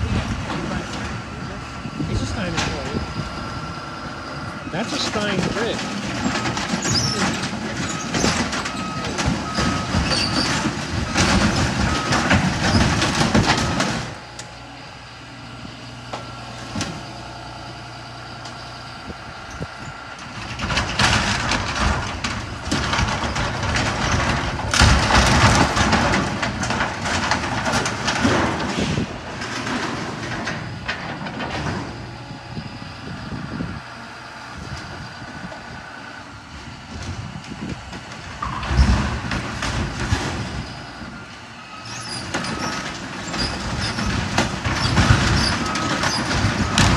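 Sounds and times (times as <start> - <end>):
heavy machinery engine running: 0.0 - 46.9
crashing and scraping debris: 4.7 - 14.2, 20.2 - 32.2, 36.9 - 46.9.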